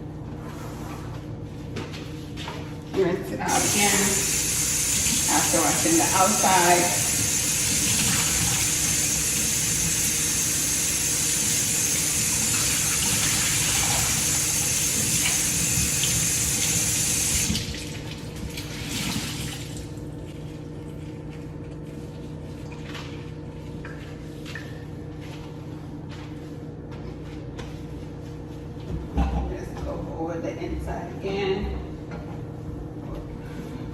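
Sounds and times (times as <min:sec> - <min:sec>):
water running from a tap: 0:03.5 - 0:20.0.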